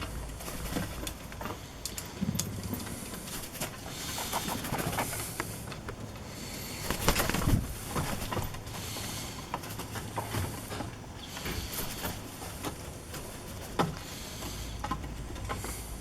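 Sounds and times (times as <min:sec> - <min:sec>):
parrots calling: 0:00.0 - 0:12.7.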